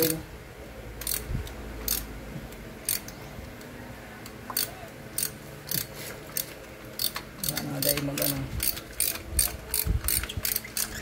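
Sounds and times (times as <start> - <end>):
metallic clicks from hand tools: 4.2 - 10.9.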